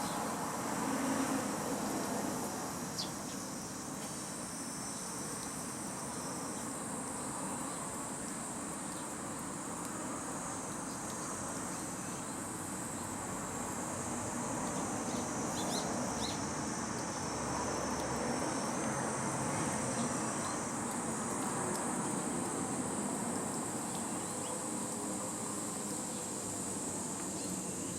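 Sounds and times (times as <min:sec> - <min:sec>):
insects buzzing: 0:00.0 - 0:27.9.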